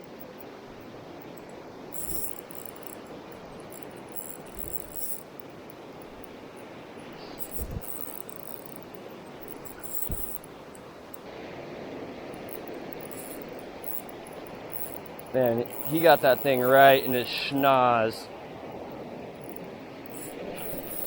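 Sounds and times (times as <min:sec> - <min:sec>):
river water rushing: 0:00.8 - 0:21.0
fishing reel clicking: 0:02.0 - 0:05.3, 0:07.4 - 0:10.5, 0:12.4 - 0:17.2, 0:19.4 - 0:21.0.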